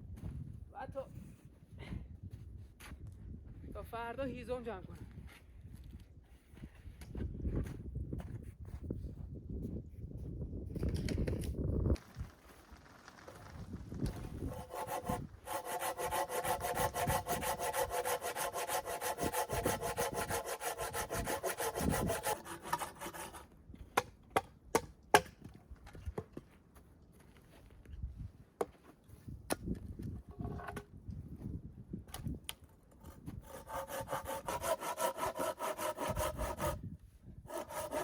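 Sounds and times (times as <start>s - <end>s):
hand saw cutting wood: 14.1s - 23.5s, 32.9s - 36.8s, 37.5s - 38.0s.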